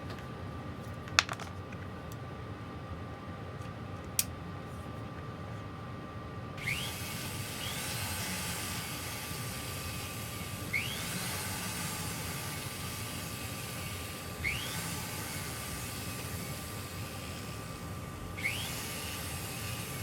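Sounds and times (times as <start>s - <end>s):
polishing wheel hissing: 6.6s - 20.0s.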